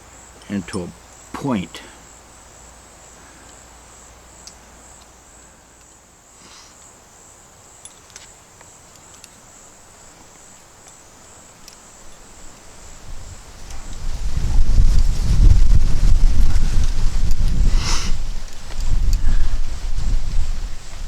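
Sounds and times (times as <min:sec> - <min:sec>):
insects trilling: 0:00.0 - 0:21.0
faint ticks: 0:04.3 - 0:07.0, 0:07.8 - 0:13.0.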